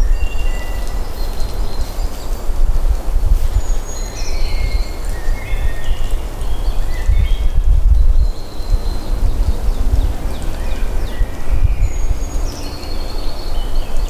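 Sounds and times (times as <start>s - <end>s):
birds chirping: 3.5s - 14.0s.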